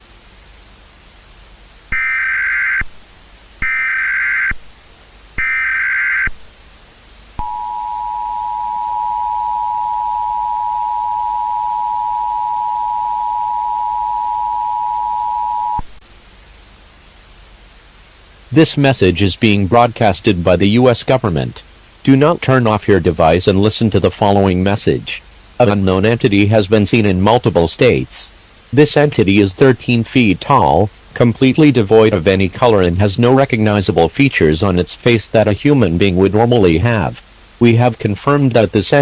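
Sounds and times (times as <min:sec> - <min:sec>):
data tone bursts: 0:01.9 - 0:02.9, 0:03.6 - 0:04.6, 0:05.4 - 0:06.4, 0:07.4 - 0:15.9
two-tone attention signal: 0:07.4 - 0:15.9.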